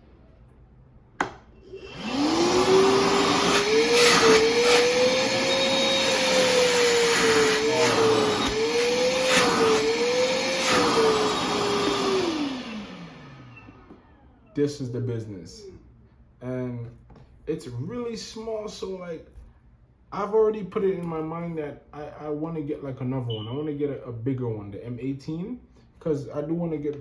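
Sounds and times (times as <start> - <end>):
wet dry vacuum motor whine: 1.6 - 14.8.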